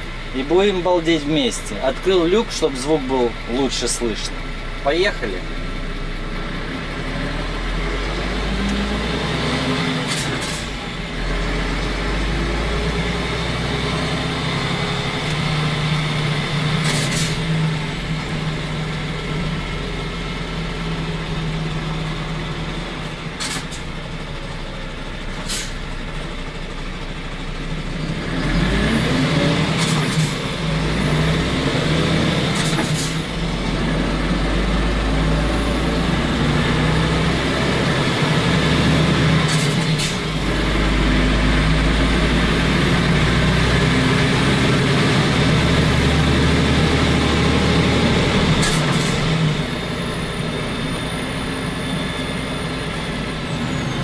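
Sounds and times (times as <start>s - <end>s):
truck diesel engine accelerating: 0.0s - 54.0s
air brake hisses: 25.4s - 25.8s.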